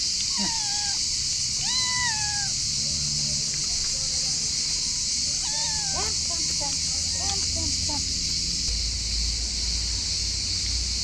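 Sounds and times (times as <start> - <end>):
cat meowing: 0.3 - 1.0, 1.6 - 2.6, 5.4 - 6.3.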